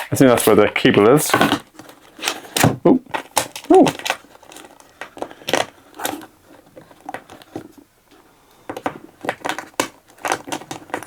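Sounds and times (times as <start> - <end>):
cardboard and plastic crinkling: 0.0 - 11.0
packaging clicks and knocks: 1.4 - 7.8, 8.6 - 11.0.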